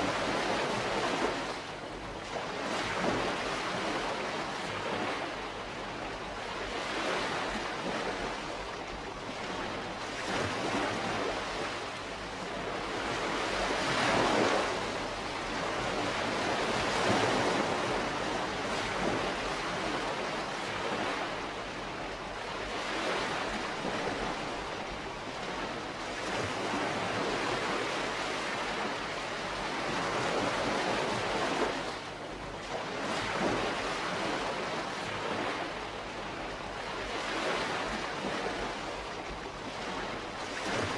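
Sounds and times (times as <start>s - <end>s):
small waves washing ashore: 0.0s - 40.9s.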